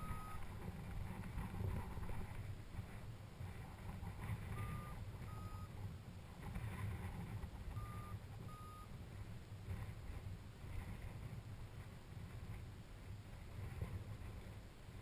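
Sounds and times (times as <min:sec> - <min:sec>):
short electronic beeps: 0:00.0 - 0:00.5, 0:04.6 - 0:05.7, 0:07.8 - 0:08.9
wind buffeting microphone: 0:00.0 - 0:15.0.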